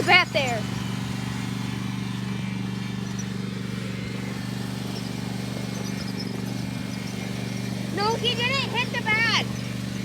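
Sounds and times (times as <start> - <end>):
lawn mower engine running: 0.0 - 10.0.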